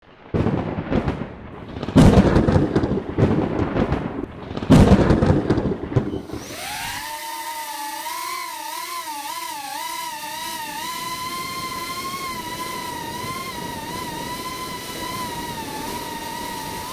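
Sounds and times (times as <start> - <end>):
quadcopter motors whining: 6.0 - 16.9.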